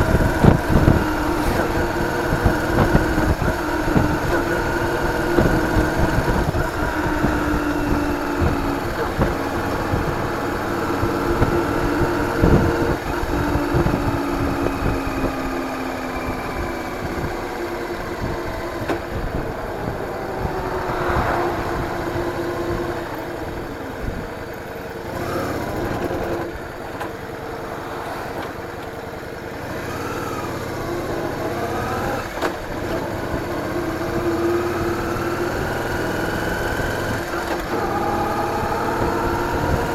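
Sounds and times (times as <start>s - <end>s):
wind rumble on microphone: 0.0s - 15.6s, 16.4s - 24.6s
vehicle engine running: 0.0s - 39.9s.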